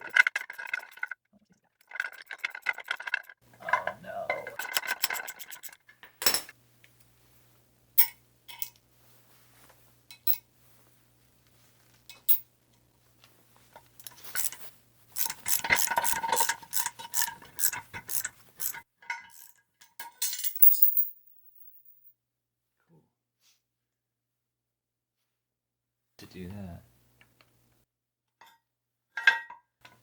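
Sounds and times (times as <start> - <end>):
metal tools clicking and clinking: 1.9 - 6.6, 10.1 - 10.4, 14.0 - 21.2
rapid clicking with metallic ring: 4.5 - 5.8, 14.0 - 19.6.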